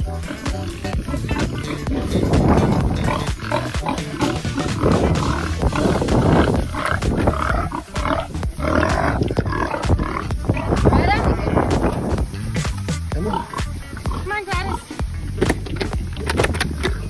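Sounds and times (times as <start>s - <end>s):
music playing: 0.0s - 17.0s
sow grunting loudly: 0.0s - 17.0s.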